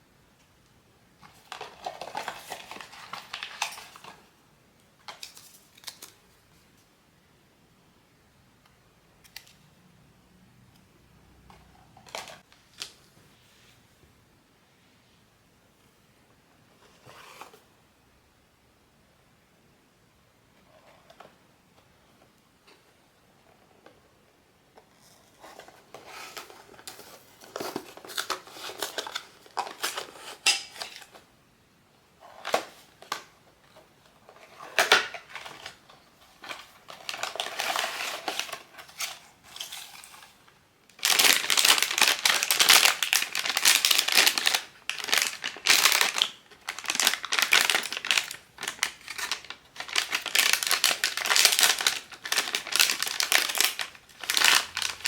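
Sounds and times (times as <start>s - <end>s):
plastic wrapping crinkling: 1.4s - 4.2s, 34.3s - 55.0s
packaging rustling and tapping: 41.0s - 55.0s.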